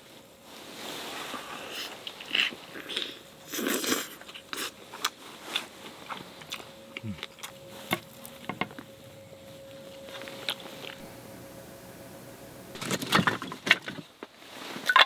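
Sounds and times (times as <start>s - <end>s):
faint steady tone: 5.7s - 13.4s.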